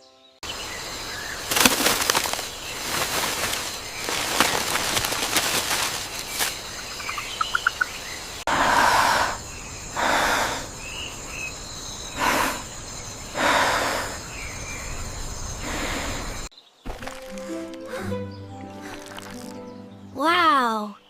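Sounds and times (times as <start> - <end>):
insect-like hiss: 0.5 - 17.8, 18.8 - 19.7
bird chirps: 6.2 - 8.4, 10.7 - 13.4, 14.1 - 21.0.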